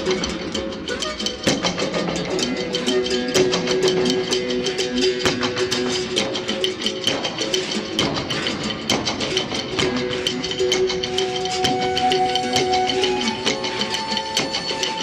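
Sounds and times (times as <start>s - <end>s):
berimbau: 0.0s - 15.0s
drum: 1.4s - 15.0s
harmonica: 11.1s - 15.0s.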